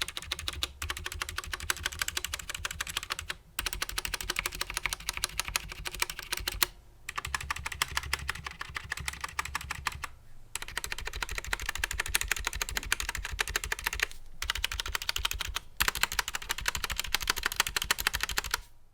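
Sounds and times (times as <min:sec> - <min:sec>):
mechanical keyboard typing: 0:00.0 - 0:18.6.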